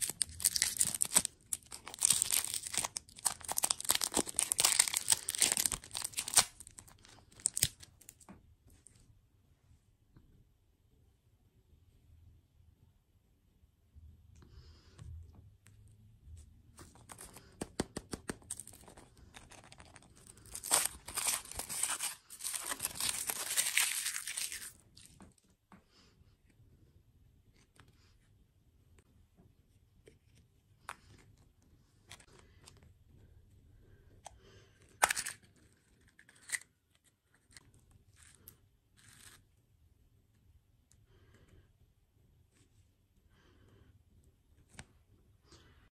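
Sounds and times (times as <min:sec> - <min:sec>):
packaging rustling: 0:00.0 - 0:07.8, 0:18.4 - 0:25.1
packaging tearing: 0:00.0 - 0:07.9, 0:18.4 - 0:25.1.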